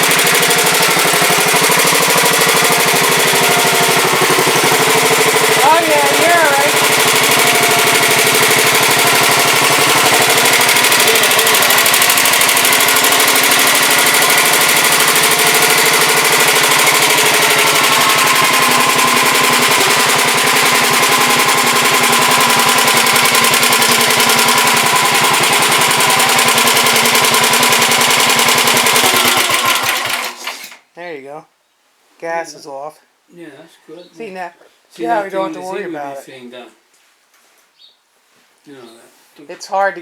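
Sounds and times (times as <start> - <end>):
small engine running: 0.0 - 30.8.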